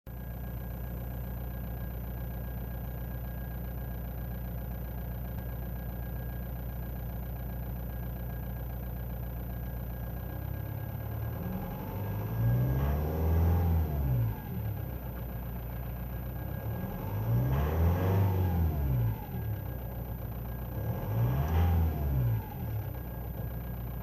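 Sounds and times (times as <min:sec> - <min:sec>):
diesel car engine idling: 0:00.1 - 0:24.0
high engine whine: 0:10.0 - 0:24.0
engine revving: 0:10.4 - 0:15.0, 0:16.4 - 0:19.8, 0:20.6 - 0:23.6.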